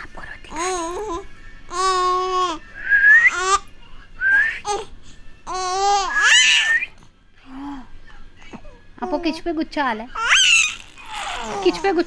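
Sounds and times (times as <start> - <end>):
baby babbling and squealing: 5.5 - 6.8, 10.2 - 11.8.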